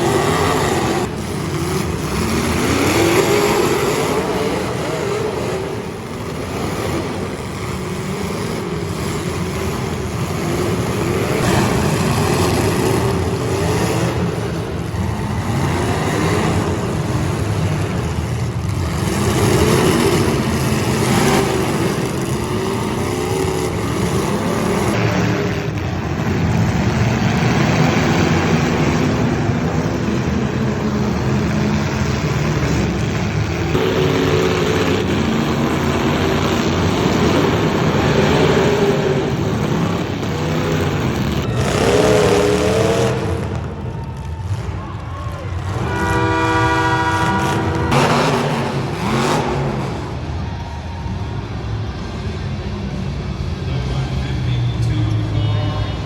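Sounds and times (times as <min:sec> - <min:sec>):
car engines revving: 0:00.0 - 0:56.0.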